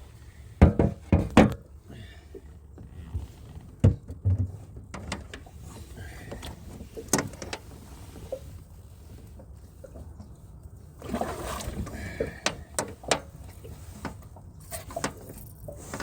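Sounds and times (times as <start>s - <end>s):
knocks and thumps on boat: 0.6s - 1.7s, 2.8s - 5.5s.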